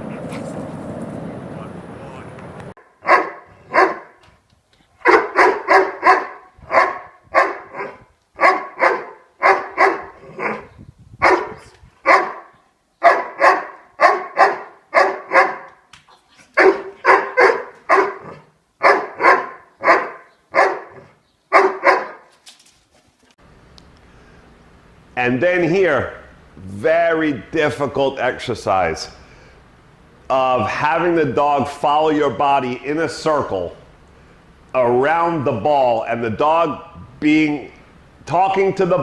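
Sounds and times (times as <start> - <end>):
dog barking: 2.8 - 4.2, 5.0 - 15.8, 16.6 - 22.3.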